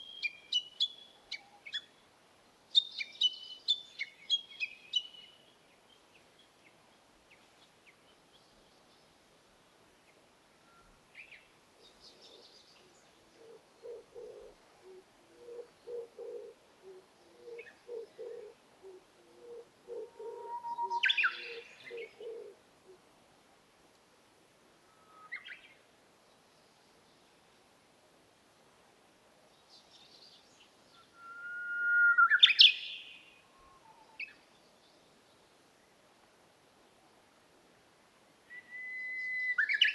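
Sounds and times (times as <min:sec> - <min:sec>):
songbird singing: 0:00.0 - 0:02.0, 0:02.7 - 0:09.2, 0:10.0 - 0:23.0, 0:24.8 - 0:27.4, 0:29.5 - 0:36.0, 0:38.4 - 0:39.9
faint bird chirps: 0:10.6 - 0:22.6, 0:24.8 - 0:25.8, 0:29.7 - 0:35.0, 0:38.5 - 0:39.9
dove cooing: 0:13.4 - 0:23.0.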